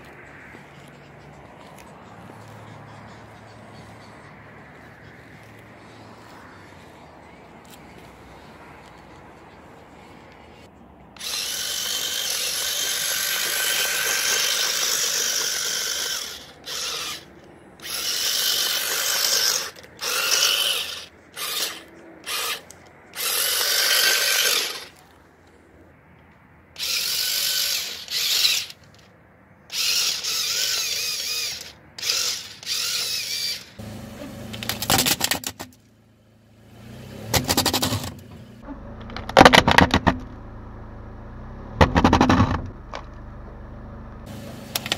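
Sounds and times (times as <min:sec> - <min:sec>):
hissing grinding bursts: 0:11.2 - 0:25.0, 0:29.7 - 0:34.1
car tyre crushing objects: 0:37.2 - 0:40.6, 0:41.7 - 0:43.2.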